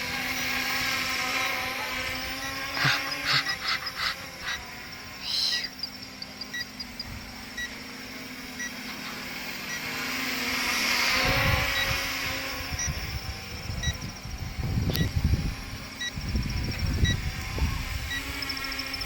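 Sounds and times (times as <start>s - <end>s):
drone propellers humming: 0.0s - 19.0s
wind rumble on microphone: 11.2s - 19.0s.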